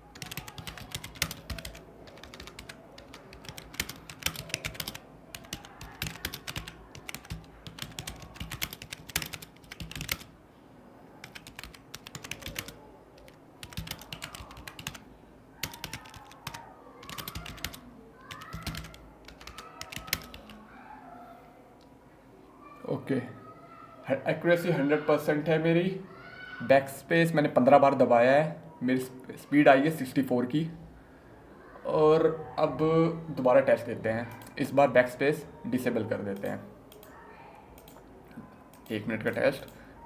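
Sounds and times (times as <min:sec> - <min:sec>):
fast typing on keyboard: 0:00.0 - 0:10.4, 0:11.2 - 0:20.6.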